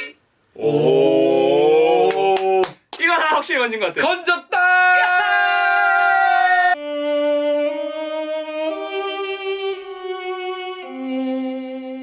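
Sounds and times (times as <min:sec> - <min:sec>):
slow melody of held notes: 0:06.8 - 0:12.0.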